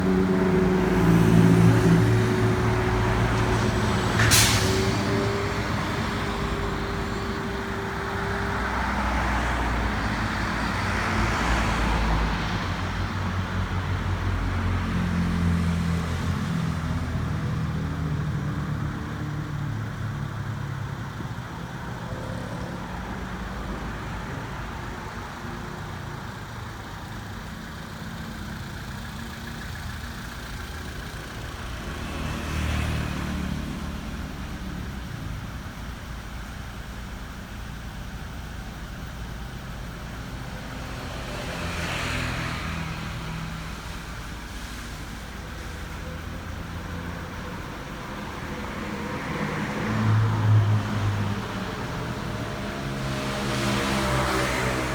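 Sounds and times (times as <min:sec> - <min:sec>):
short sharp hiss: 0:04.2 - 0:04.9.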